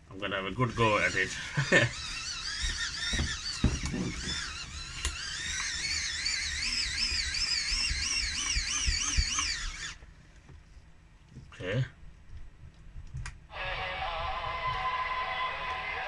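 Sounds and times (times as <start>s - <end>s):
hand crank dynamo whine: 0.4s - 10.0s
knocks: 2.6s - 4.8s.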